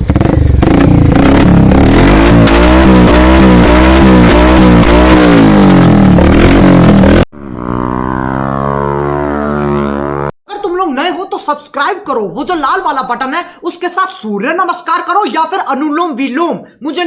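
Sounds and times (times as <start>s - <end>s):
motorcycle engine revving: 0.0s - 10.4s
steady pitched sound: 1.2s - 10.4s.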